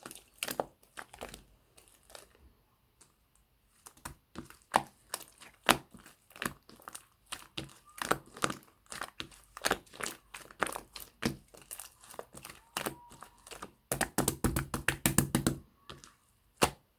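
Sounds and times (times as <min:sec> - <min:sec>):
slime crackling and popping: 0:03.7 - 0:16.9.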